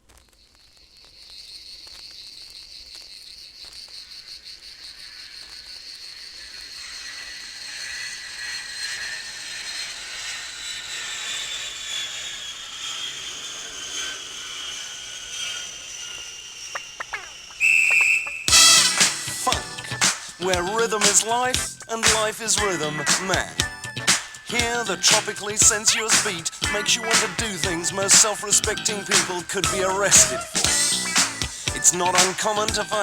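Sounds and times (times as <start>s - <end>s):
vinyl surface crackle: 0.0s - 4.0s
pulsing insect-like chirring: 0.1s - 29.6s.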